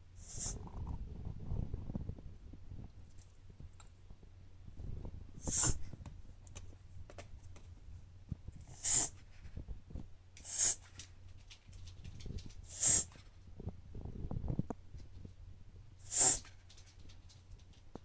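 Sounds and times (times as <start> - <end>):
dog reverse sneezing: 5.4 - 5.9, 8.7 - 9.2, 10.4 - 10.9, 12.7 - 13.2, 16.0 - 16.5
rough breathing: 16.0 - 16.6.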